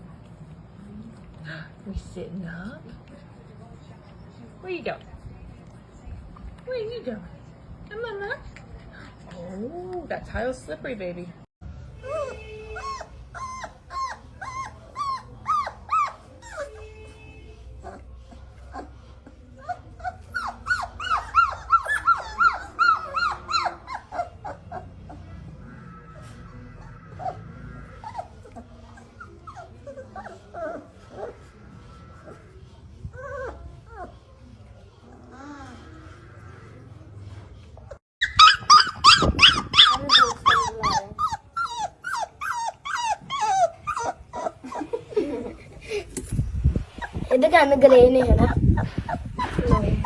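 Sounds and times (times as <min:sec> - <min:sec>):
puppy whining: 0:08.4 - 0:10.5, 0:12.0 - 0:17.0, 0:17.7 - 0:45.5, 0:46.8 - 0:50.0.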